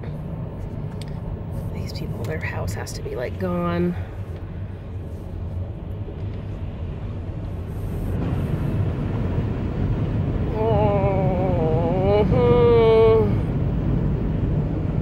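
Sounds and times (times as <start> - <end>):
car driving rumble from inside: 0.0 - 15.0
person making drawn-out vocal sound: 10.5 - 13.4.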